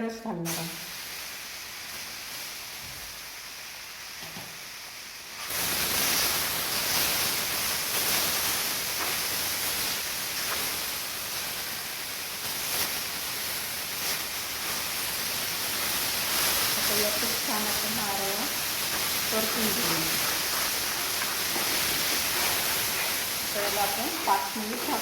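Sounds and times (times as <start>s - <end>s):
pulp sizzling in a hot pan: 0.2s - 25.0s.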